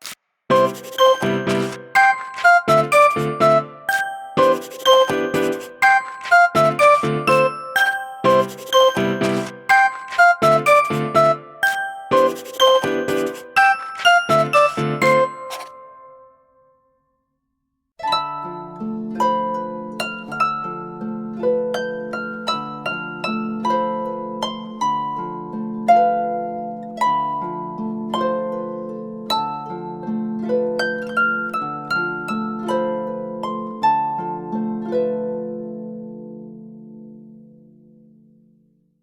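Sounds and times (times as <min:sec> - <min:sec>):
phone ringtone melody: 0:00.5 - 0:16.4.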